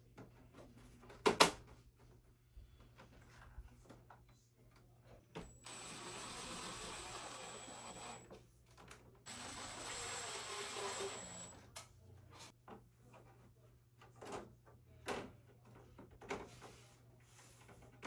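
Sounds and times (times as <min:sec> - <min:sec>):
cordless drill whining: 0:05.4 - 0:08.3, 0:09.3 - 0:11.6.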